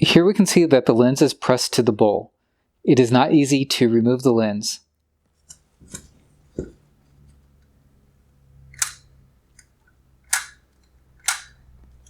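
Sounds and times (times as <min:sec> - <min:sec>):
clicks and taps of tools: 0:08.8 - 0:12.0.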